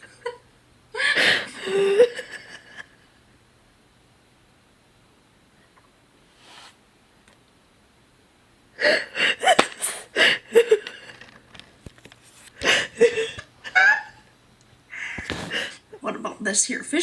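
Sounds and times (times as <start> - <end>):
woman gasping and squealing: 14.9 - 15.8.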